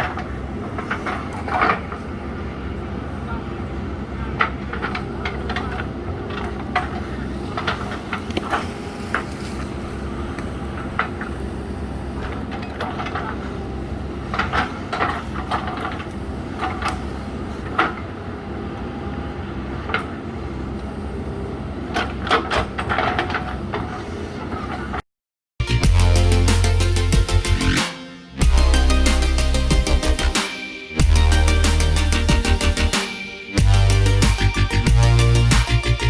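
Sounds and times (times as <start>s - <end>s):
diesel engine running: 31.0s - 36.0s.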